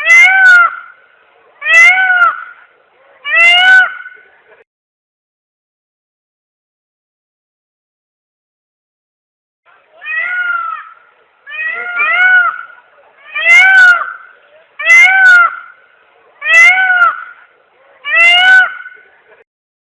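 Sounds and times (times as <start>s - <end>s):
peacock calling loudly: 0.0s - 4.4s, 9.8s - 19.2s.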